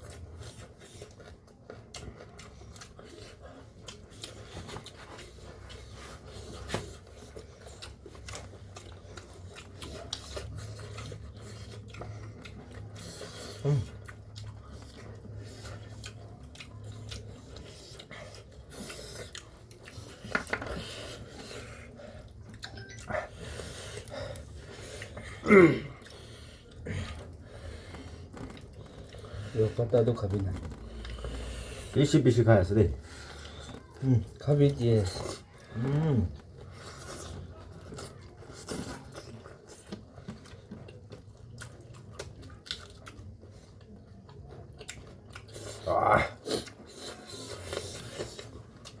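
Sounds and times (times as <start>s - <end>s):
person chewing and eating: 0.0s - 49.0s.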